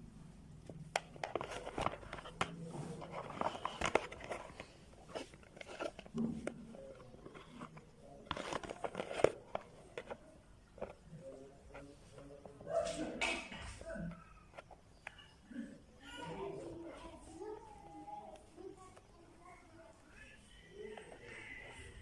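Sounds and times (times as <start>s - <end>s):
crinkling: 0.6s - 15.3s
clicks and scraping of small parts: 0.9s - 10.2s.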